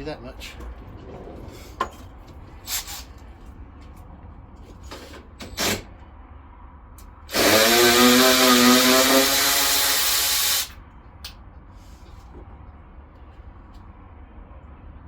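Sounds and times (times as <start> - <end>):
handheld power tool running: 7.3 - 10.7.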